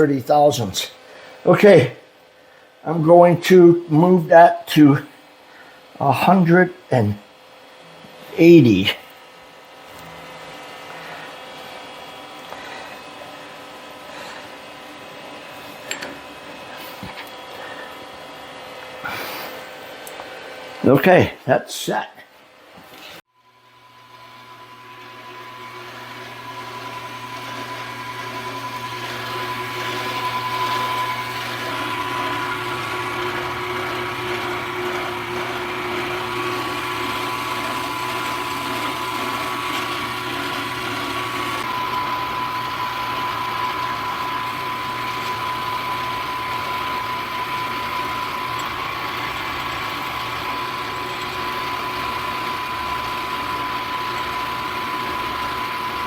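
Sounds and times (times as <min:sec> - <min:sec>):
thin machine whine: 0:23.3 - 0:56.0
milling machine cutting steel: 0:23.6 - 0:56.0.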